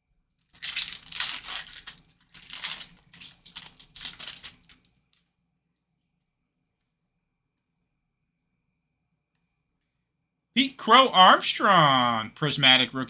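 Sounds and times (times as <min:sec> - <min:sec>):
foil wrapper tearing and crinkling: 0:00.4 - 0:05.2.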